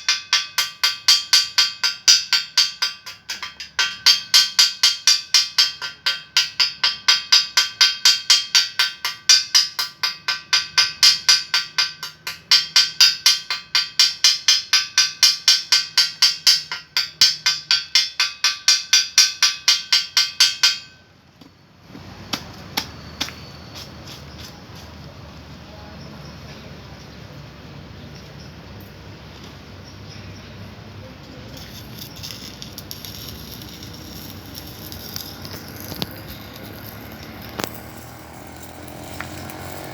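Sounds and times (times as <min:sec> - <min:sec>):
hammer striking steel pipe: 0:00.0 - 0:21.0, 0:31.6 - 0:39.9.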